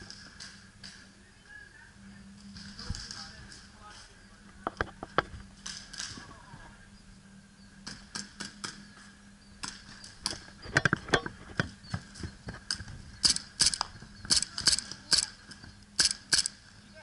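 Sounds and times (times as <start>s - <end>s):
faint steady hum: 0.0s - 17.0s
airsoft gun snaps: 13.2s - 15.3s, 16.0s - 16.6s.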